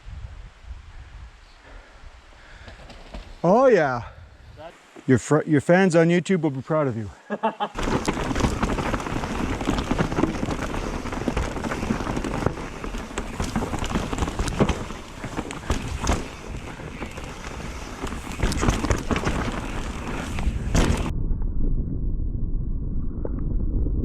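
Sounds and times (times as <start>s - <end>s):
wind noise on microphone: 0.0s - 3.4s, 7.8s - 24.0s
bike rattling over bumps: 2.5s - 3.4s, 7.8s - 21.1s
tyres rolling over dirt: 7.7s - 21.1s.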